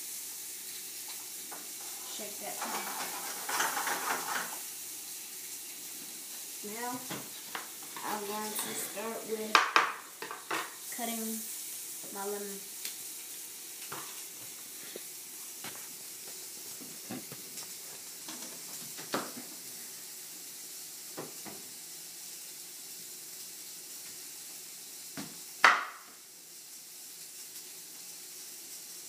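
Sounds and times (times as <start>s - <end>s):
food sizzling in pans: 0.0s - 29.0s.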